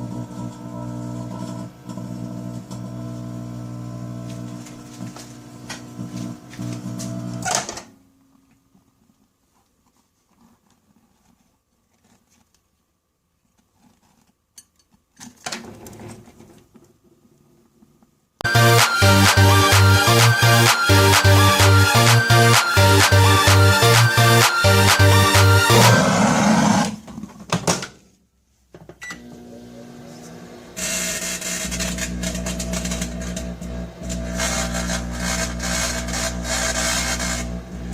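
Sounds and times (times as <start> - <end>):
microwave oven humming: 0.0 - 7.5, 29.0 - 37.9.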